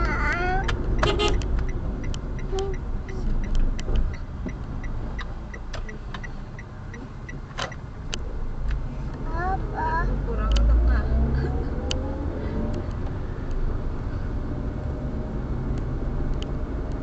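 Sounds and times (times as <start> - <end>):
engine and road rumble: 0.0 - 17.0
car turn signal ticking: 0.1 - 9.2.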